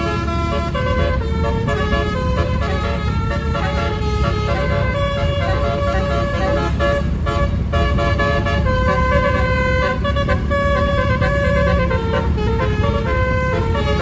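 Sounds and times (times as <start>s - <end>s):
musical air horn tune: 0.0s - 14.0s
steady low rumble: 0.0s - 14.0s.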